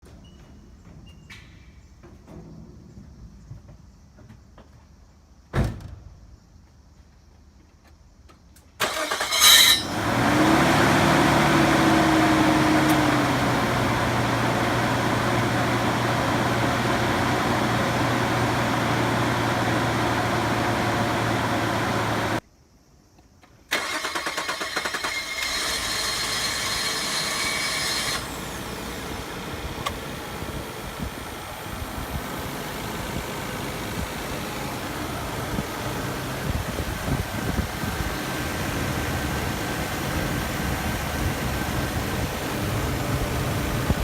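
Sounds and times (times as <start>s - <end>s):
car engine fast idle: 8.8s - 22.4s, 23.7s - 44.0s
starter cranking with abnormal noise: 23.8s - 34.2s.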